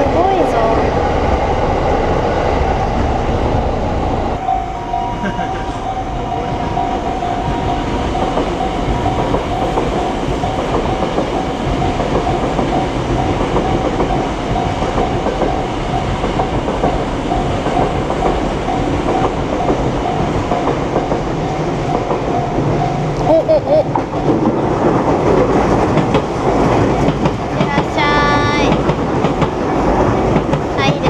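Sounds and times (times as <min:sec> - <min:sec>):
train wheels clattering: 0:00.0 - 0:31.0
level crossing bell dinging: 0:04.4 - 0:24.4.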